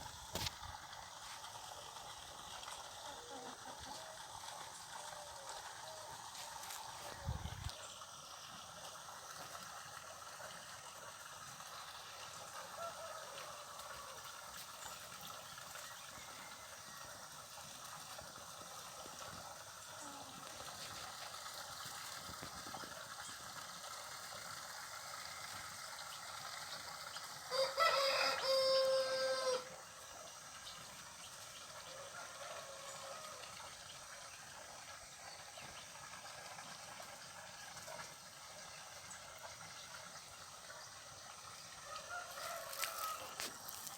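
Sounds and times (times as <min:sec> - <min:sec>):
rooster crowing: 0:12.6 - 0:14.3, 0:27.5 - 0:29.7, 0:41.8 - 0:43.6.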